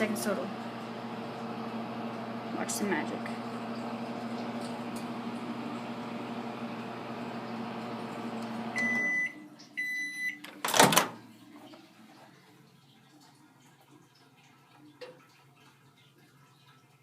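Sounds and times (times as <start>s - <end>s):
microwave oven humming: 0.0s - 10.6s
microwave beeps: 4.8s - 10.5s.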